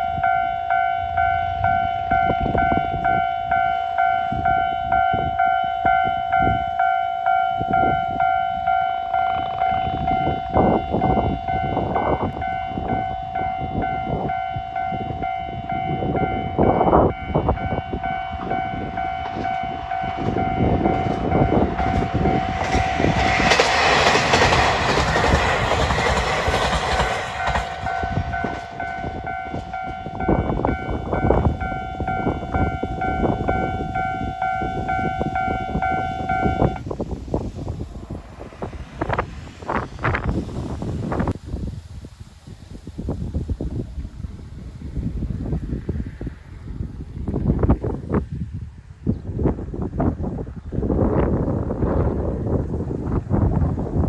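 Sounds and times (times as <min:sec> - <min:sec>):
train rushing past: 0:00.0 - 0:49.0
train wheels knocking on rail joints: 0:18.4 - 0:33.3
level crossing bell ringing: 0:27.4 - 0:36.8.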